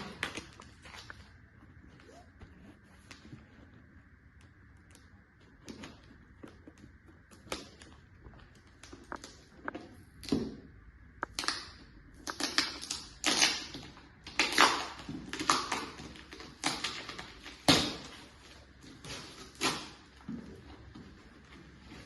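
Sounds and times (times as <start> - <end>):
tape and cardboard ripping: 12.2 - 20.2.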